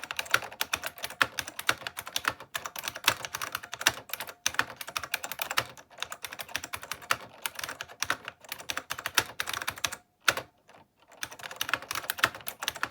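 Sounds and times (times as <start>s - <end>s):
fast clicky keyboard typing: 0.0s - 12.9s.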